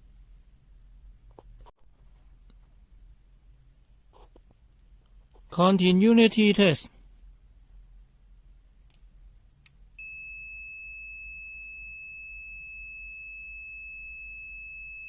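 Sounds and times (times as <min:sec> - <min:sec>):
multimeter continuity beep: 0:10.0 - 0:15.0.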